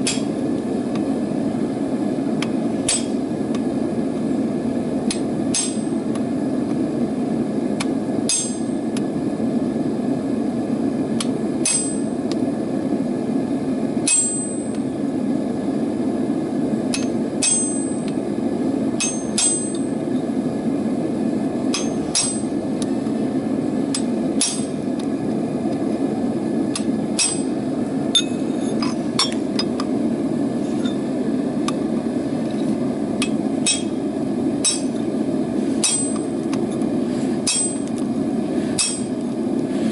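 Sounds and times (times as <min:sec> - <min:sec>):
hammer ringing on steel: 0:08.3 - 0:08.7, 0:11.6 - 0:12.1, 0:14.1 - 0:14.7, 0:17.0 - 0:18.1, 0:19.0 - 0:19.9, 0:33.7 - 0:34.0, 0:34.6 - 0:35.0, 0:37.5 - 0:37.9.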